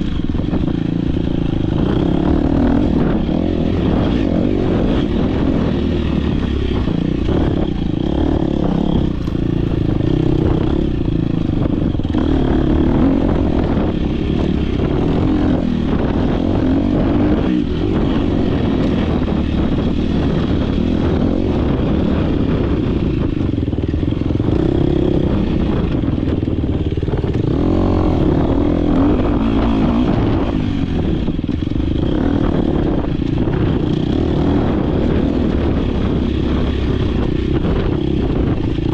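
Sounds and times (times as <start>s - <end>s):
dirt bike engine revving: 0.0s - 38.9s.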